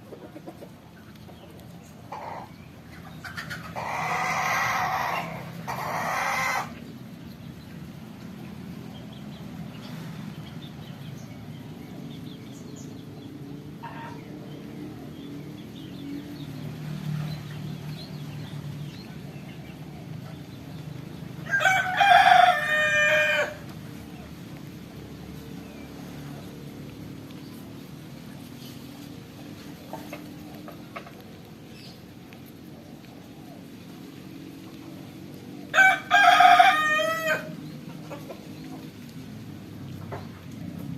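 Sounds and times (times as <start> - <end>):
rooster crowing: 21.4 - 23.6, 35.7 - 37.6.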